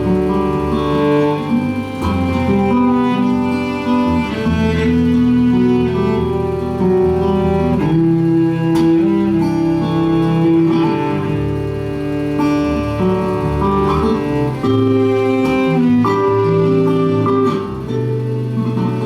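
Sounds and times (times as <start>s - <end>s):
acoustic guitar accompaniment: 0.0s - 19.0s
bowed string melody: 0.0s - 19.0s.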